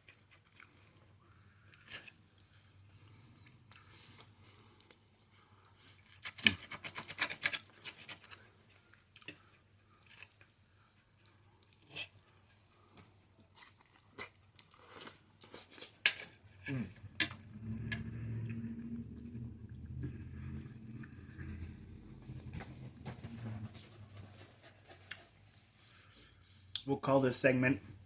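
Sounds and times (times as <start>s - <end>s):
close-up chewing: 0.0s - 23.1s, 24.0s - 26.8s
low steady hum: 16.2s - 28.0s.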